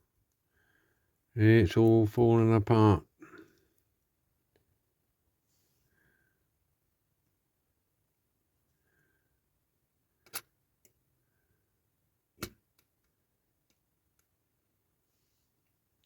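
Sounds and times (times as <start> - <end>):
toy parts clicking: 10.2 - 10.5
faint ticks of toy parts: 10.2 - 11.1.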